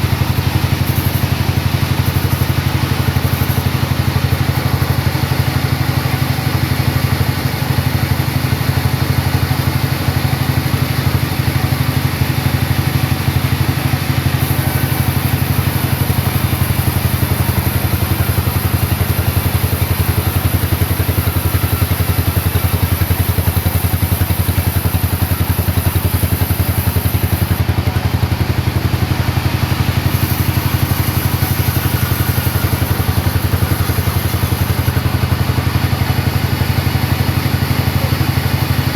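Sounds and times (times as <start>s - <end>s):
sawmill engine throbbing: 0.0s - 38.9s
high hiss: 30.0s - 36.0s.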